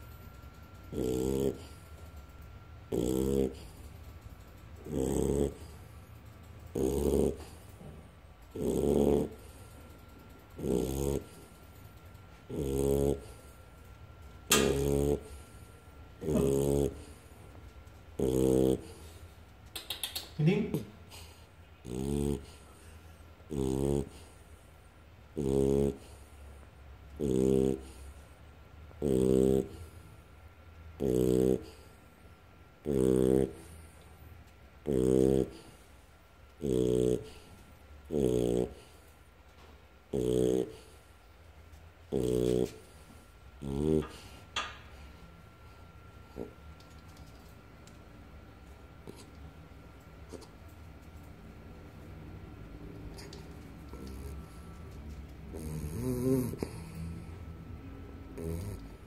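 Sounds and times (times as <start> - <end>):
dog snoring: 0.8 - 17.5, 18.1 - 19.4, 20.7 - 24.6, 25.3 - 28.4, 29.0 - 30.3, 31.0 - 32.2, 32.8 - 35.9, 36.5 - 39.2, 40.0 - 41.2, 42.1 - 45.1, 46.2 - 47.1, 49.0 - 49.4, 52.9 - 59.0
person snoring: 16.2 - 17.0, 34.9 - 35.6, 40.1 - 40.8, 55.5 - 57.2.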